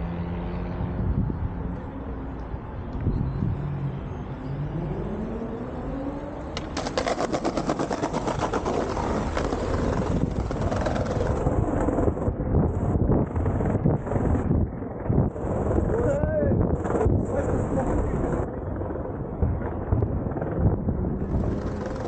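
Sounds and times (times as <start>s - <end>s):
vehicle engine accelerating past: 3.5s - 6.6s.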